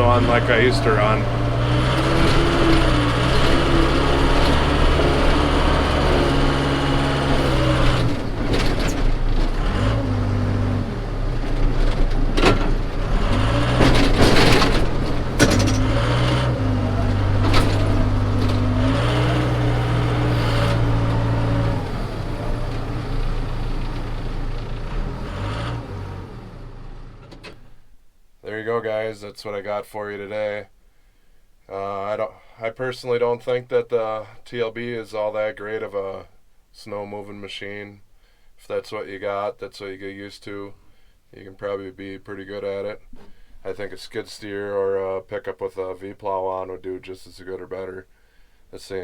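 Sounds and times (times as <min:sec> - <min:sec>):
diesel engine revving under load: 0:00.0 - 0:27.8
sharp metal knocks and clatters: 0:13.4 - 0:16.4.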